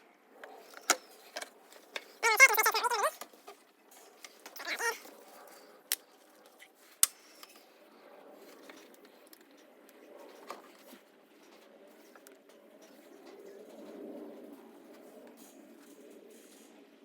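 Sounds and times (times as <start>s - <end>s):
short pitched animal call: 2.2s - 3.2s, 4.6s - 5.1s.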